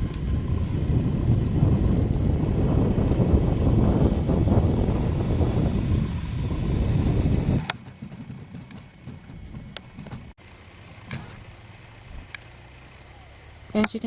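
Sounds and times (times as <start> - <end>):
wind buffeting microphone: 0.0 - 10.4
faint clicks: 12.2 - 12.5.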